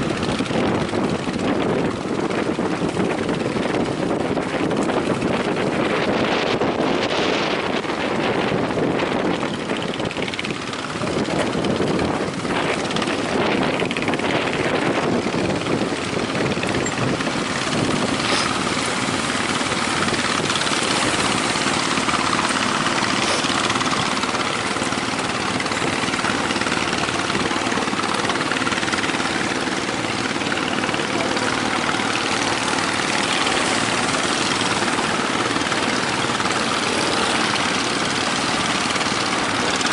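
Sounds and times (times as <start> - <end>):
boat engine running: 0.0 - 39.9
wind on microphone: 0.0 - 39.9.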